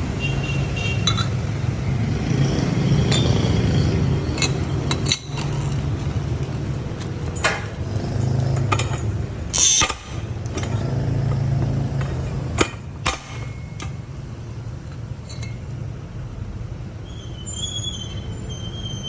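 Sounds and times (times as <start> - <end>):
metal knocks and clinks: 1.0 - 1.7, 2.7 - 7.8, 8.4 - 9.7, 14.8 - 15.8.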